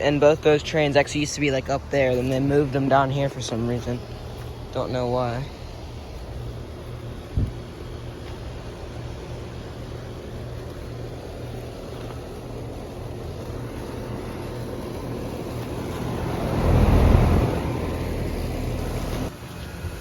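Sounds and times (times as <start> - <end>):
condensing units humming: 0.0 - 20.0
rushing swell: 13.1 - 20.0.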